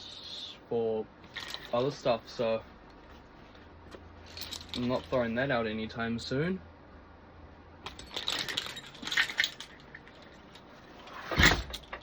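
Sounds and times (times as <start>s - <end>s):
metal carabiners clinking: 1.3s - 2.1s, 4.2s - 5.4s, 7.8s - 12.0s.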